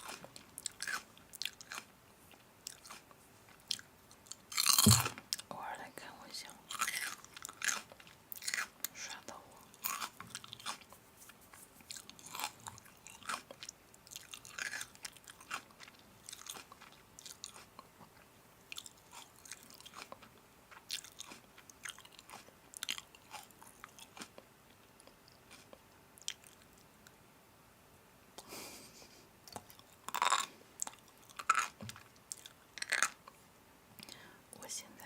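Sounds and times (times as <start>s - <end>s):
person chewing crunchy food: 0.0s - 5.5s, 6.7s - 9.0s, 9.6s - 26.8s, 29.5s - 33.4s.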